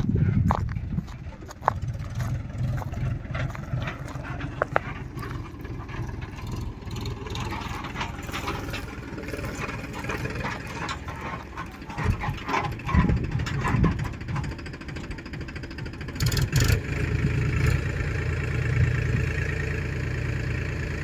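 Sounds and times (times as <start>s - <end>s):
diesel engine running: 0.0s - 21.0s
metal clanks: 0.9s - 15.6s.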